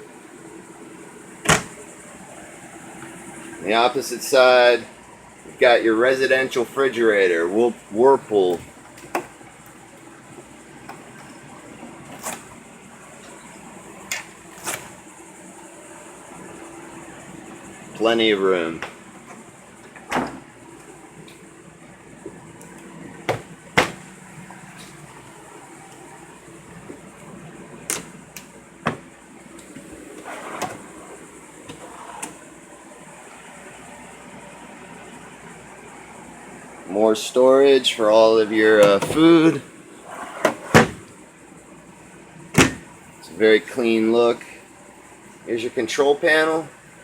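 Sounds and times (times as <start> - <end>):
engine and air conditioning hum: 0.0 - 47.0
cabinet doors and latches clicking: 1.4 - 1.8, 19.9 - 20.4, 22.7 - 24.1, 27.8 - 31.0, 38.7 - 39.5, 40.2 - 41.1, 42.5 - 42.9.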